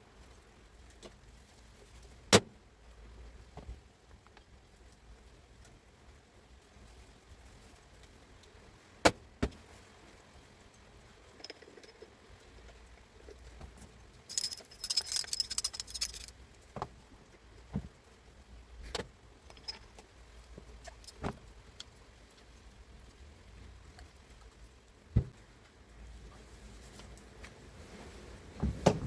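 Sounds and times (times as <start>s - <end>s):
jingling metallic rattle: 11.3s - 12.2s, 14.3s - 16.4s, 19.5s - 20.0s, 20.8s - 21.3s
metal tools clicking and knocking: 11.3s - 12.7s, 14.3s - 16.4s, 19.4s - 20.1s, 20.8s - 21.9s.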